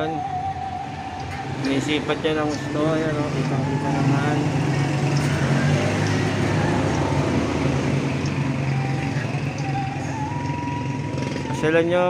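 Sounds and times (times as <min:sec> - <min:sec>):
vehicle engine running: 0:00.3 - 0:12.0.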